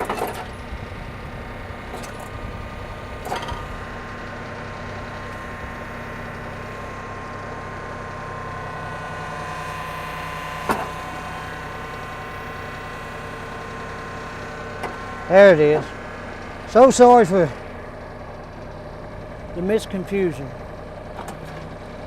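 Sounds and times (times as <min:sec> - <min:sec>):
diesel tractor engine running: 0:00.0 - 0:22.0.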